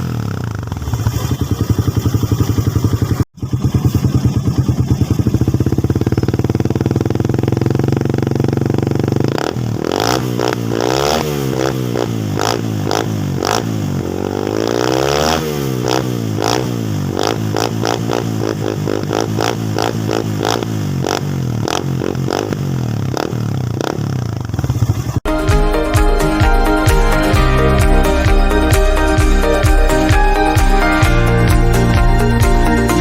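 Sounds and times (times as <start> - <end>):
two-stroke motorcycle engine revving: 0.0 - 25.3.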